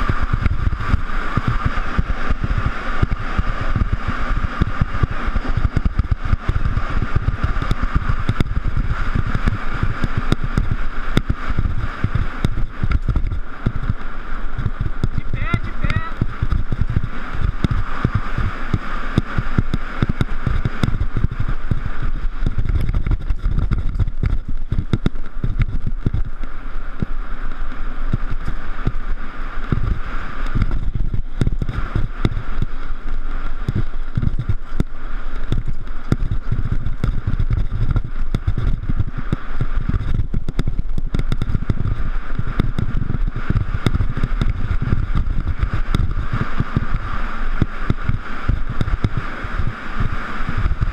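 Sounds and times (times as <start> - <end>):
bike tyres rumbling on rough ground: 0.0 - 50.9
wind buffeting microphone: 0.0 - 50.9
bike knocks and rattles: 15.9 - 27.1, 29.6 - 50.9.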